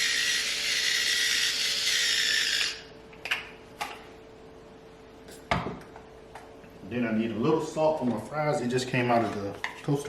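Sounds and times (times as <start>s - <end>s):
electric pepper grinder whirring: 0.0s - 2.9s.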